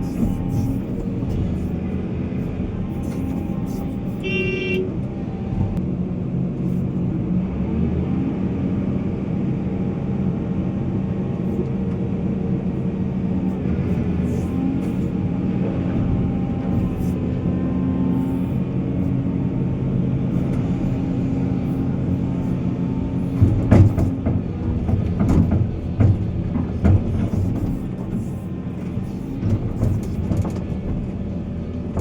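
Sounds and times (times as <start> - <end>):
diesel engine running: 0.0 - 32.0
short horn toot: 3.0 - 5.8.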